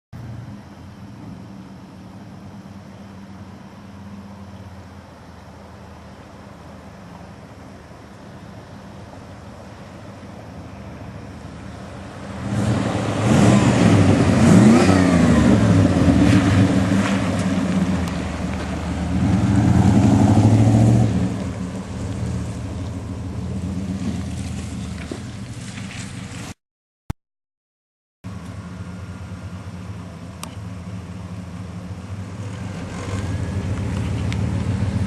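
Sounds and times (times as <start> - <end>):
pickup engine revving: 11.1 - 26.0, 28.5 - 35.0.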